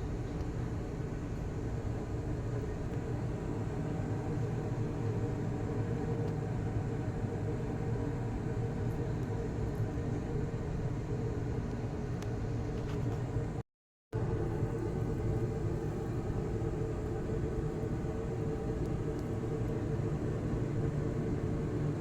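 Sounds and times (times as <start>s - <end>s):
low hum and rumble: 14.2s - 22.0s.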